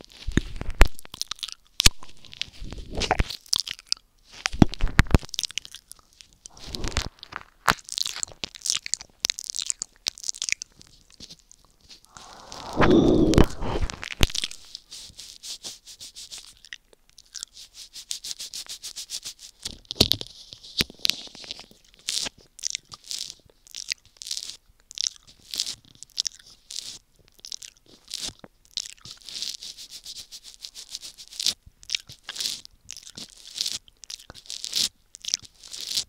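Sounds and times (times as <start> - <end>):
wet mouth licking and smacking: 27.3 - 29.7, 30.8 - 35.8.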